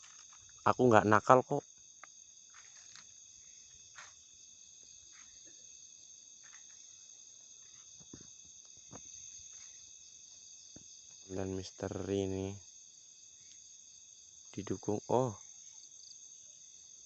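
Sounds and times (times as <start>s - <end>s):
faint ticks and rustles: 0.0s - 0.7s, 1.6s - 11.4s, 13.1s - 14.6s
crickets trilling: 0.0s - 17.0s.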